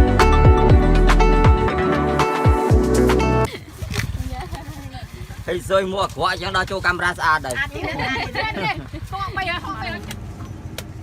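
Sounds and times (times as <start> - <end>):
electronic music with kick drums: 0.0 - 3.5.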